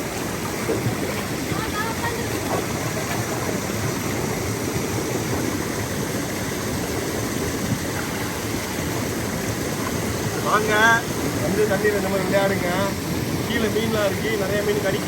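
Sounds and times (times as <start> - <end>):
waterfall pouring over rocks: 0.0 - 15.0.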